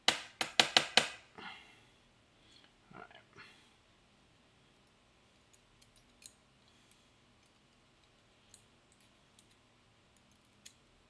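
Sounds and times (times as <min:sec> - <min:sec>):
small metal lock parts clicking: 0:05.4 - 0:06.4.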